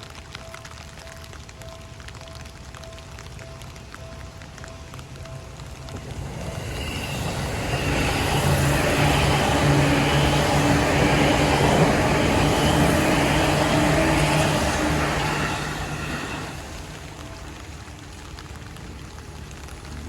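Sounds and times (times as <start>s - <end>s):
electric train passing: 3.4s - 20.0s.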